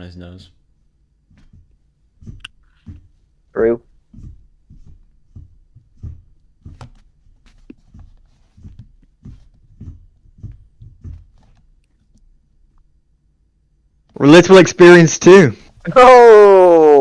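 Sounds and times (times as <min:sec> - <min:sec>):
soft low thumps: 0:01.1 - 0:13.0.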